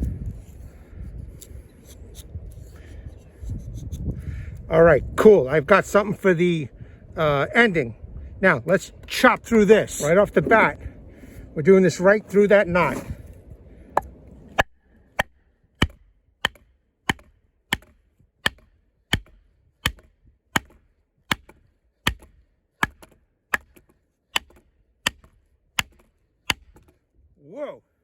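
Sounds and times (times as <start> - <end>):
strikes on knife spine into log: 15.2 - 26.9.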